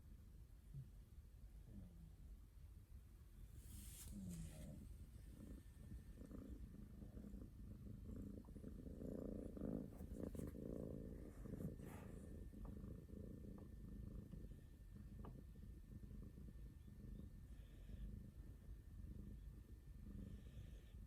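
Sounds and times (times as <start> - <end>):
cat snoring: 3.7 - 21.0.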